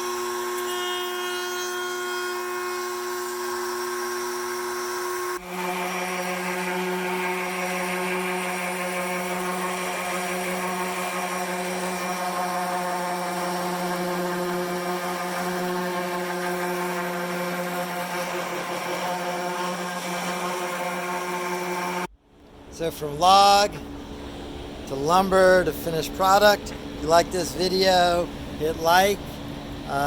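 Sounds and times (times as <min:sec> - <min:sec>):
router running at steady pitch: 0:00.0 - 0:22.2.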